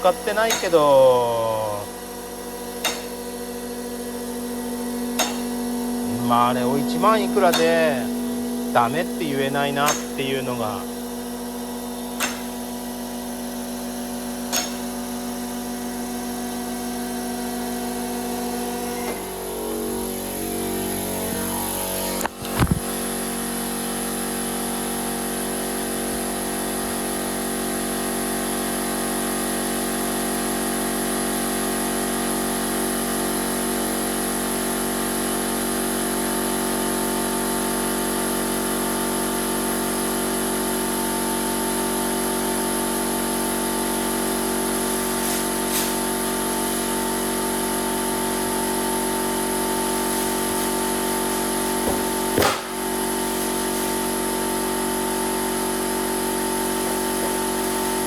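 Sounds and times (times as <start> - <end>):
air compressor running: 0.0 - 58.0
brief knock: 22.4 - 22.9.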